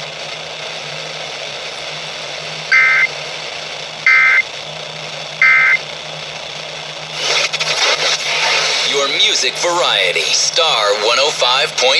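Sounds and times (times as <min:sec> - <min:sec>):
low hum: 0:02.5 - 0:06.3
two-tone digital data bursts: 0:02.7 - 0:03.1, 0:04.1 - 0:04.4, 0:05.4 - 0:05.8
radio hiss: 0:02.7 - 0:03.2, 0:04.1 - 0:04.4, 0:05.4 - 0:05.8, 0:07.1 - 0:11.9.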